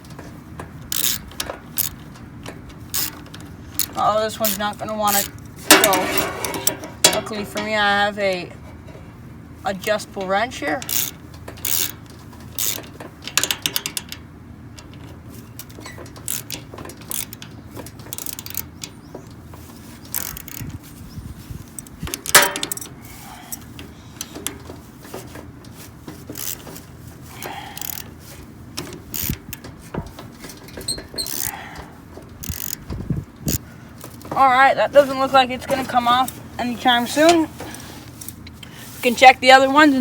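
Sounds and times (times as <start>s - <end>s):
wrench clicking on bolt: 0.8s - 7.8s, 10.8s - 14.2s, 14.8s - 19.0s, 20.1s - 20.8s, 21.8s - 24.6s, 26.3s - 26.8s, 27.4s - 28.1s, 28.8s - 29.7s, 30.9s - 31.6s, 32.4s - 33.6s
loud metal clank: 5.6s - 7.8s, 22.3s - 22.9s.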